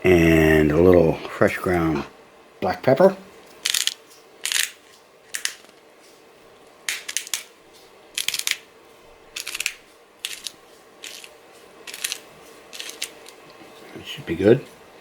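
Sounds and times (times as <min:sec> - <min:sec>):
pepper mill grinding: 0:03.6 - 0:05.8, 0:06.9 - 0:07.5, 0:08.2 - 0:08.7, 0:09.4 - 0:13.4.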